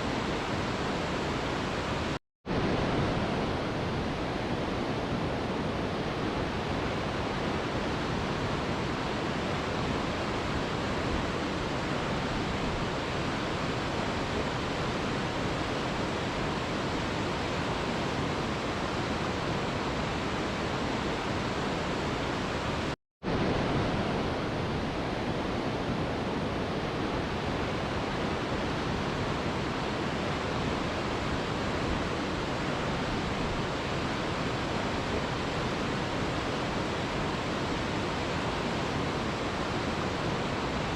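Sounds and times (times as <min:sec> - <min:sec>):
waterfall roaring: 0:00.0 - 0:40.9.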